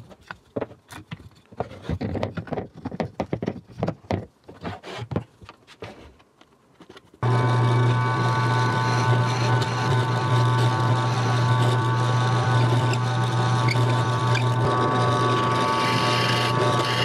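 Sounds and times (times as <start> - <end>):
power tool motor running: 7.2 - 17.0.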